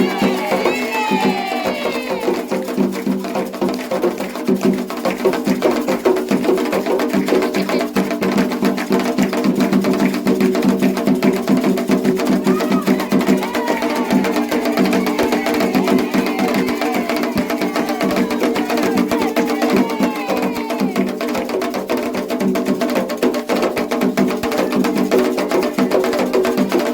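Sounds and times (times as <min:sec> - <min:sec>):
people singing: 0:00.0 - 0:03.1, 0:12.2 - 0:21.9
bell-like percussion: 0:00.0 - 0:26.9
fast hand drumming: 0:00.0 - 0:26.9
higher wavering voices: 0:12.4 - 0:21.3.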